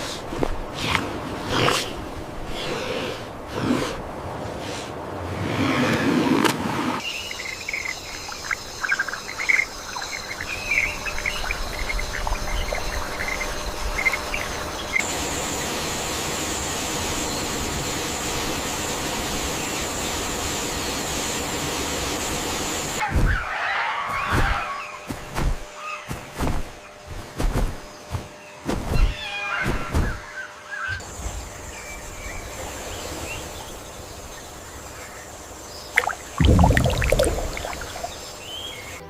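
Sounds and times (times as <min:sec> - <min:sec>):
faint insect drone: 0:07.0 - 0:23.0.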